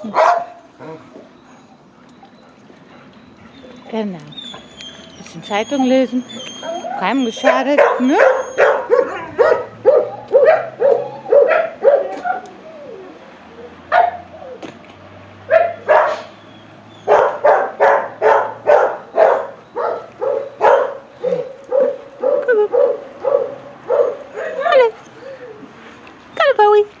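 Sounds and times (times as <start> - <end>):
dog barking: 0.1 - 0.6, 6.6 - 12.4, 13.9 - 14.3, 15.5 - 16.3, 17.0 - 24.8.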